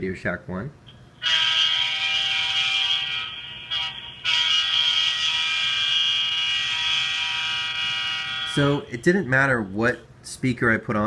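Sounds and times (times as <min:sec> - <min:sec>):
buzzy electronic tone: 0:01.2 - 0:10.0.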